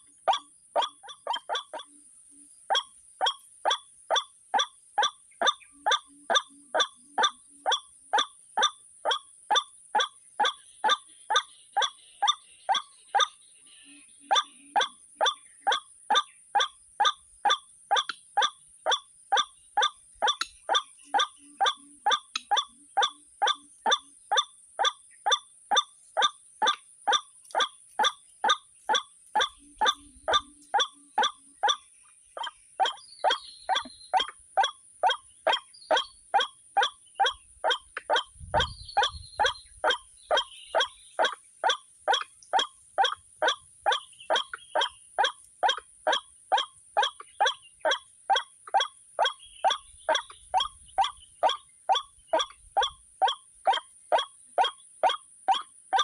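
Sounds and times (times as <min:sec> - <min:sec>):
waterhen calling: 0:00.0 - 0:02.0, 0:02.7 - 0:56.0.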